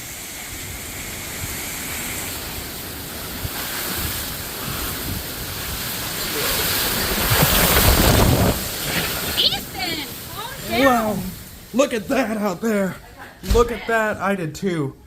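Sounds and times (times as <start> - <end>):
wind buffeting microphone: 0.0 - 11.7
strong wind gusting: 0.0 - 12.2.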